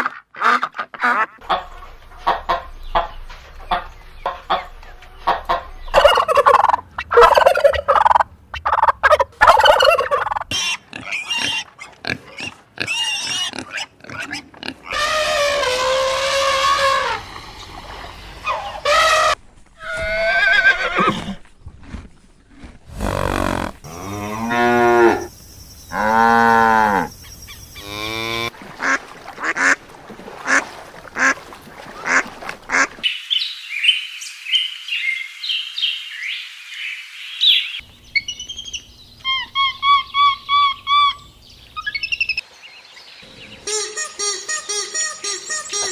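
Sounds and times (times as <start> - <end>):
high chirping: 38.1 - 42.4, 43.2 - 45.9.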